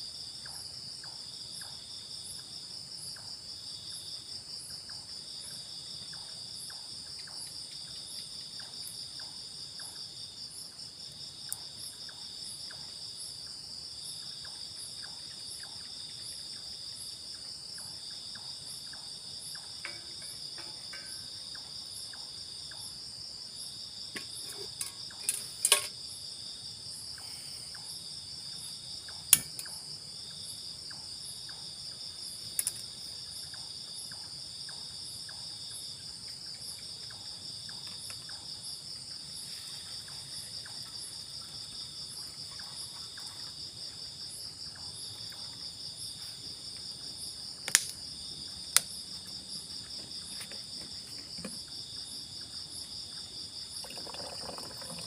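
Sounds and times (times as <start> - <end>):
high pulsing insect trill: 0.0 - 55.0
lower insect call: 0.0 - 55.0.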